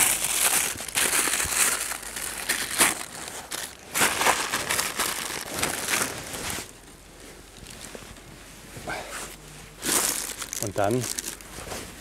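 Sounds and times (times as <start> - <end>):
plastic packaging crinkling: 0.0 - 6.7, 9.8 - 11.5.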